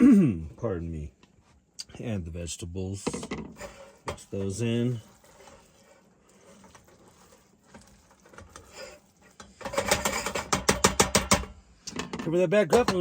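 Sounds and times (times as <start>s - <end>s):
spatula stirring food in a pan: 3.4s - 11.5s.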